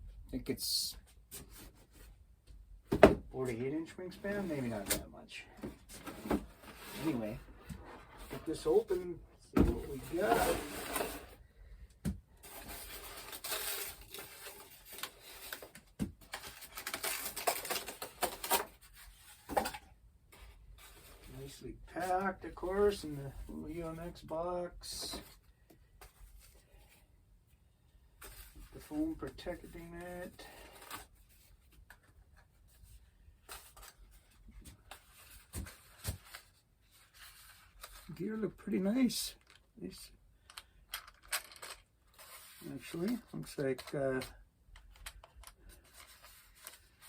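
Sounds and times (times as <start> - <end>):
box knocks: 2.9 - 3.3.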